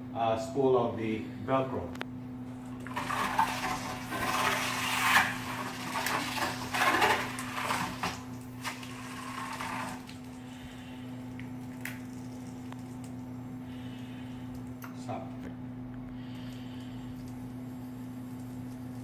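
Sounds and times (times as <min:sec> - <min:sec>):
steady low hum: 0:00.0 - 0:19.0
velcro tape scraping and rustling: 0:03.6 - 0:05.4.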